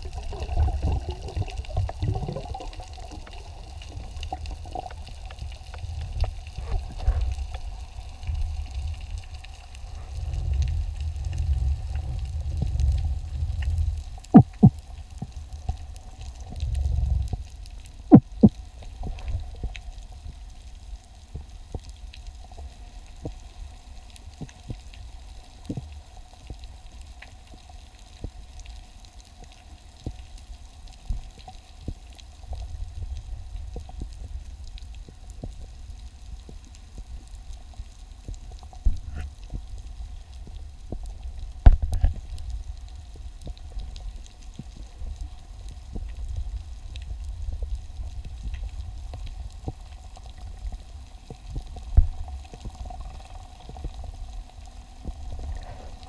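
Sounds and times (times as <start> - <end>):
faint steady hum: 0.0 - 56.0
underwater clicks and crackles: 0.0 - 56.0
low rumbling: 5.8 - 15.2.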